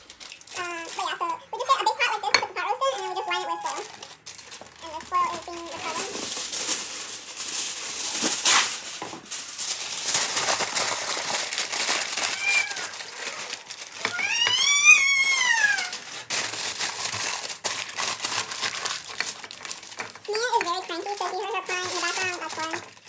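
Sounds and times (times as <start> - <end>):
aluminium foil crinkling: 0.0 - 23.0
toddler whining and crying: 1.5 - 4.0, 12.3 - 16.1.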